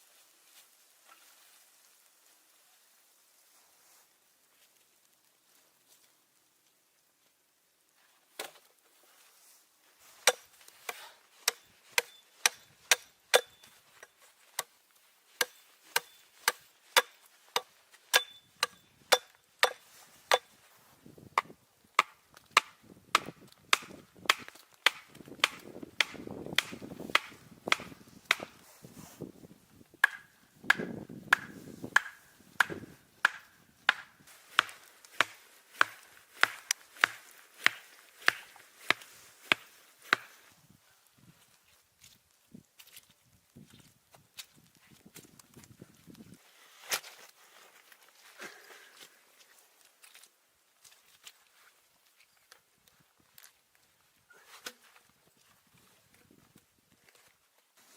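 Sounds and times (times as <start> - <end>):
wood chopping strikes: 10.2 - 13.6, 15.4 - 20.5, 21.4 - 28.6, 30.0 - 40.4
rustling: 26.7 - 29.8, 43.7 - 57.9.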